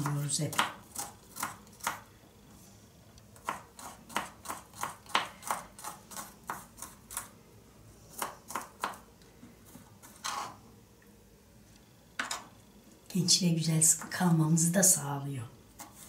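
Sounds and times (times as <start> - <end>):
knife chopping on cutting board: 3.4 - 7.3, 8.1 - 9.0.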